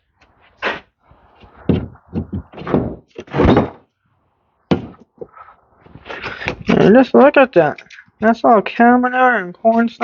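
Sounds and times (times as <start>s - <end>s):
dull thunks and knocks on metal: 1.6s - 3.8s, 4.7s - 5.1s.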